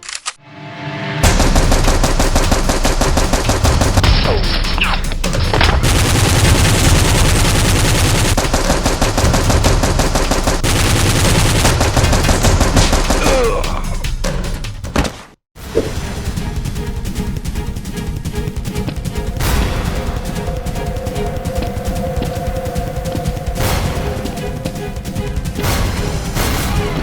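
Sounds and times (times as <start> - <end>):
rapid automatic gunfire: 1.2 - 13.5.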